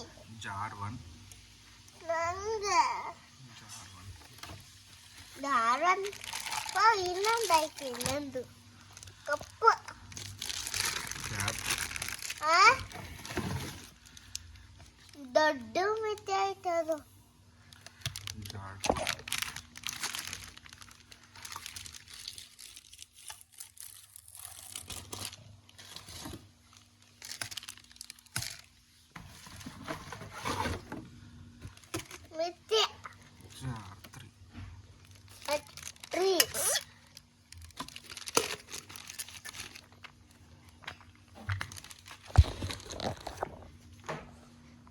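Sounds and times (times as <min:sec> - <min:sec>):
packaging crinkling and rustling: 0:04.1 - 0:15.2, 0:17.7 - 0:31.0, 0:31.6 - 0:32.3, 0:35.0 - 0:44.0.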